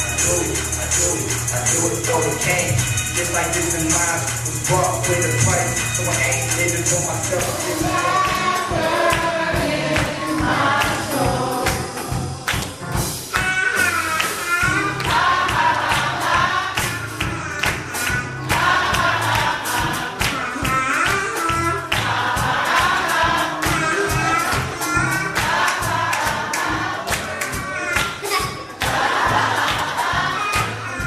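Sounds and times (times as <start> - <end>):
band with drums and bass: 0.0 - 31.0
gospel singing: 0.0 - 31.0.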